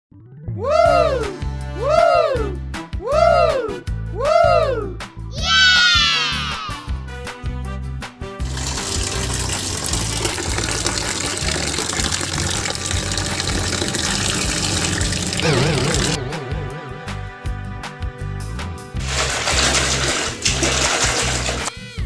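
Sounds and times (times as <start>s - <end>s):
music with steady beat: 0.9s - 22.0s
rushing water noise: 8.4s - 17.3s, 19.0s - 21.7s
warbling tone: 12.0s - 17.5s.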